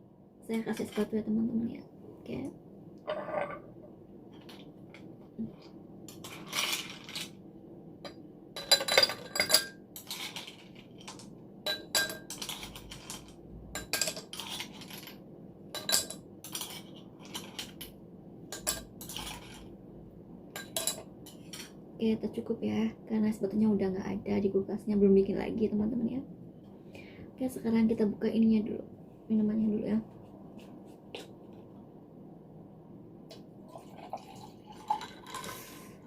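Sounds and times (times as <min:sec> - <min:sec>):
ice cubes clinking in glass: 0:06.1 - 0:07.3, 0:33.8 - 0:35.7.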